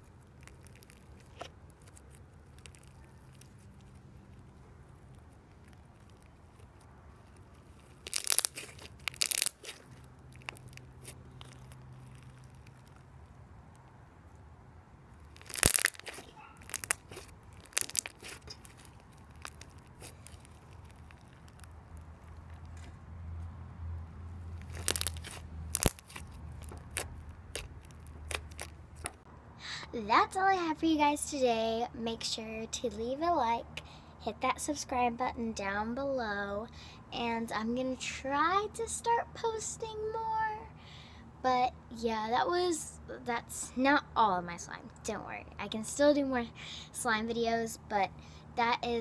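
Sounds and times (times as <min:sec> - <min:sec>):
slime squished crackly pops: 0:00.0 - 0:13.2, 0:15.2 - 0:22.8, 0:24.6 - 0:29.2.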